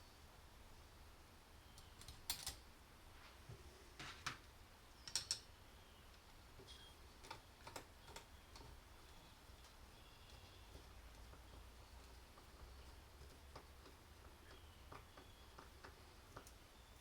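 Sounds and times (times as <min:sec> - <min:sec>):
small metal parts clicking: 0:01.8 - 0:02.6, 0:05.0 - 0:05.5.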